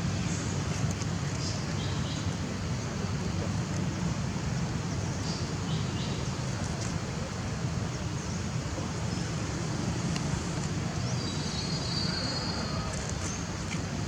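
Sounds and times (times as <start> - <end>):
outdoor background noise: 0.0 - 14.0.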